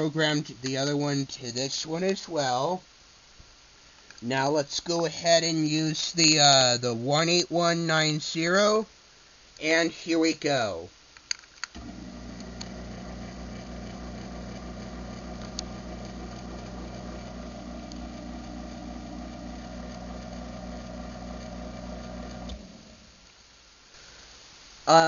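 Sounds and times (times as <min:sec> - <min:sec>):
garage door opener motor running: 0:11.8 - 0:23.2.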